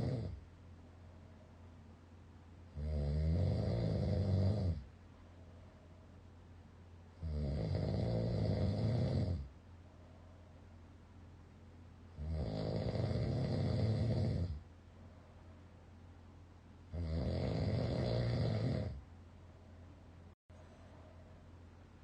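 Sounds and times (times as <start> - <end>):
person snoring loudly: 0.0 - 0.4, 2.7 - 4.9, 7.2 - 9.5, 12.2 - 14.6, 16.9 - 19.0.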